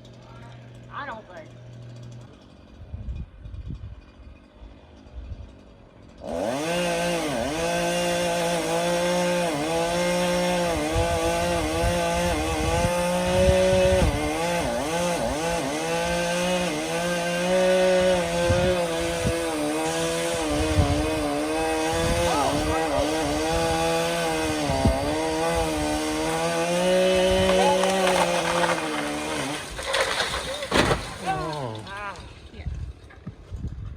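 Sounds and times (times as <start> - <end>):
chainsaw cutting: 0.0 - 2.9, 4.0 - 32.5.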